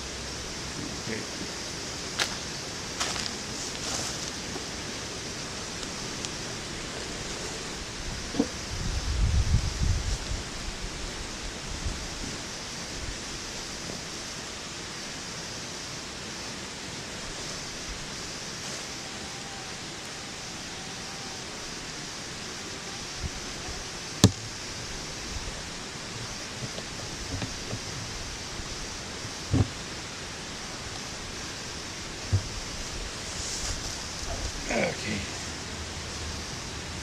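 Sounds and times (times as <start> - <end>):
steady outdoor hiss: 0.0 - 37.0
sharp knock: 24.2 - 24.5
soft knocks: 29.5 - 29.8.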